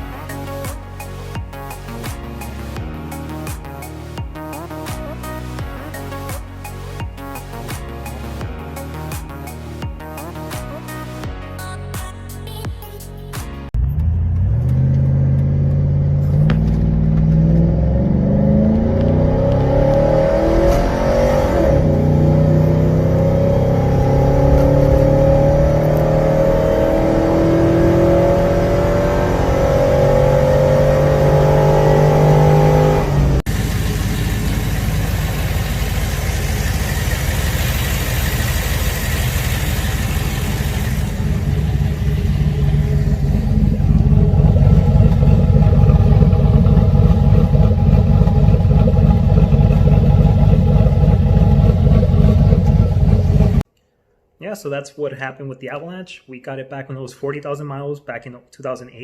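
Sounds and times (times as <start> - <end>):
car engine accelerating: 13.7 - 53.7.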